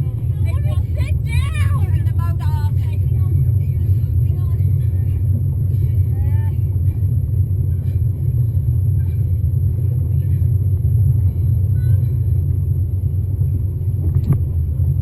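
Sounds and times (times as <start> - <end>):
speedboat engine rumble: 0.0 - 15.0.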